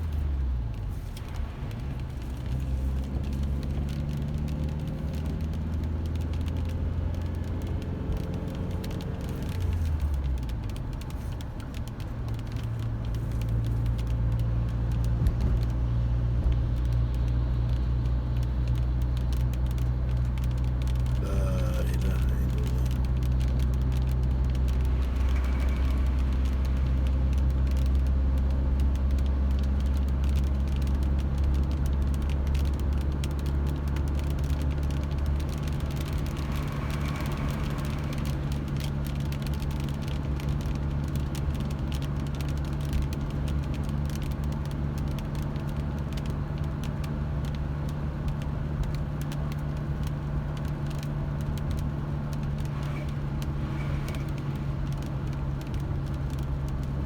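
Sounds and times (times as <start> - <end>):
car engine and road drone: 0.0 - 57.0
light crackling ticks: 0.1 - 57.0.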